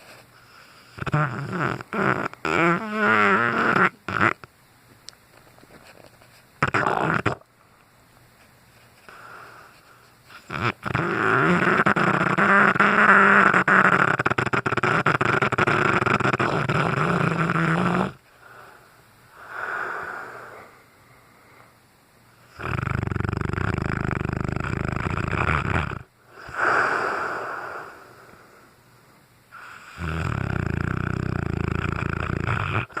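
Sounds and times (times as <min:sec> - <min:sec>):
dog snoring loudly: 0:00.8 - 0:04.5, 0:06.6 - 0:07.4, 0:10.3 - 0:18.2, 0:22.4 - 0:28.1, 0:29.5 - 0:33.0
soft breaths: 0:07.6 - 0:10.4, 0:18.2 - 0:22.5, 0:26.2 - 0:30.0.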